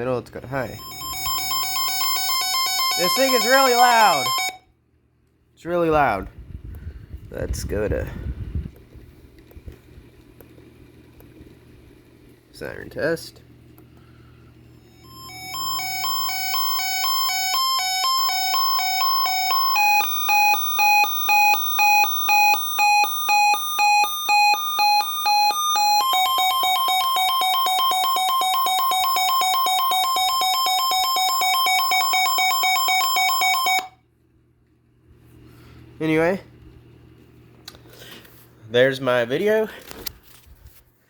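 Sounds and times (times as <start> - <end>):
warbling two-tone siren: 0.8 - 4.6, 15.0 - 34.0.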